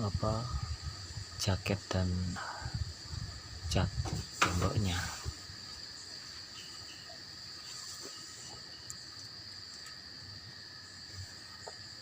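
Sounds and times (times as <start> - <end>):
insects chirring: 0.0 - 12.0
faint ticks: 8.0 - 10.1, 11.5 - 11.9.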